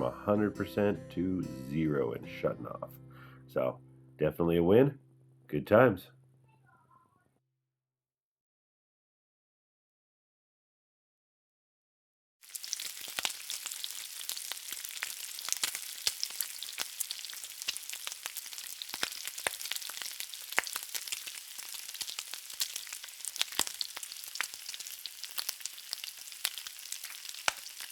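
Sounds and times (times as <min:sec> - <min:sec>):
dense crackling and sizzling: 0:12.4 - 0:27.9
sharp pops: 0:26.5 - 0:27.8.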